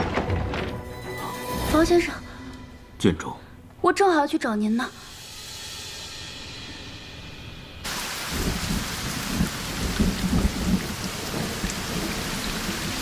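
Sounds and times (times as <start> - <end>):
heavy rain: 7.8 - 13.0
thunder rumbling: 7.9 - 13.0.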